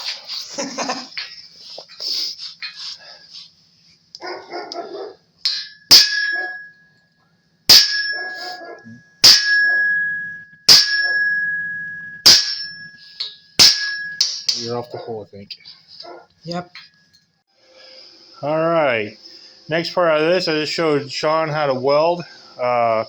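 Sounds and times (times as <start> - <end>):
ringing metallic ping: 5.4 - 7.1, 7.7 - 14.7
hammer striking steel punch: 5.5 - 6.7, 7.7 - 8.4, 9.2 - 14.7.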